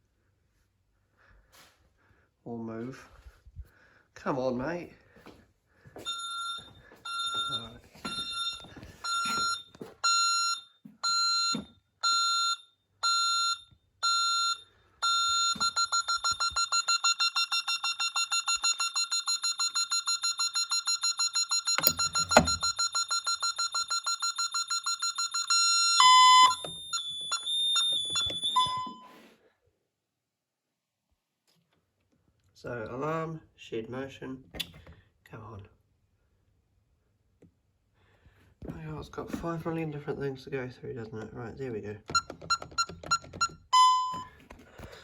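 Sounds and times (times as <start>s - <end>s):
security alarm beeping: 6.1s - 29.1s, 42.1s - 44.4s.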